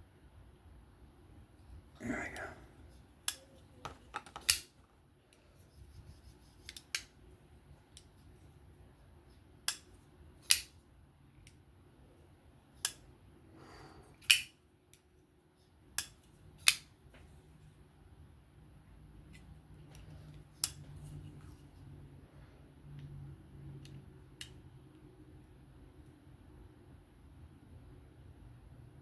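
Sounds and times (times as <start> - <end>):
folding knife clicks: 4.4 - 4.7, 9.6 - 10.8, 12.8 - 13.0, 14.2 - 15.0, 16.0 - 16.9.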